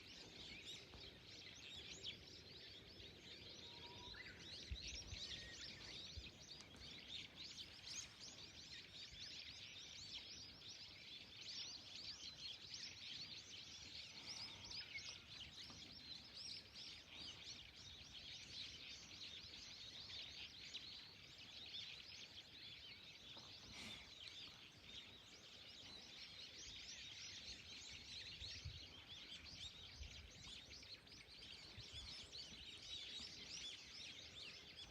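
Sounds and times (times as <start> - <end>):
small birds chirping: 0.0 - 34.9.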